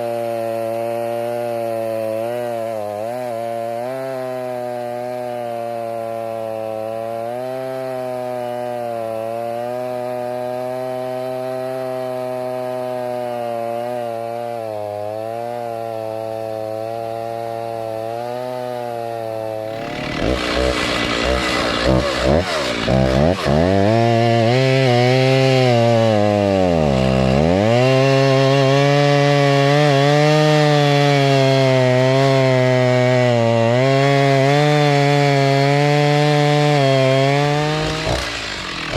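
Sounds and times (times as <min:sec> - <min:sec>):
tractor diesel engine running: 0:19.7 - 0:23.2, 0:37.9 - 0:38.9.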